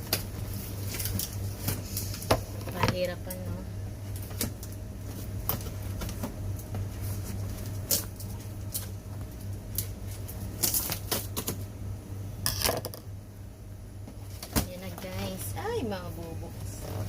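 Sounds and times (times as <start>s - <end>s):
steady low hum: 0.0s - 17.0s
packaging crinkling: 7.4s - 11.6s.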